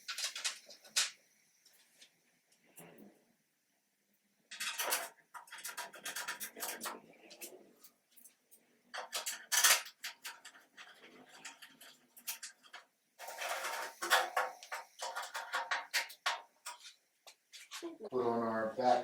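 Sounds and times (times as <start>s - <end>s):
metal clattering and rattling: 4.5s - 7.5s, 8.9s - 16.8s.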